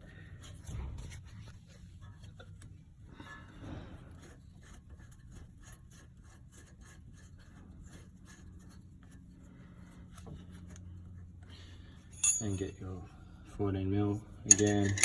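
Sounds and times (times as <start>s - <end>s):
steady low hum: 0.0s - 15.0s
small metal clicks and scrapes: 14.4s - 15.0s.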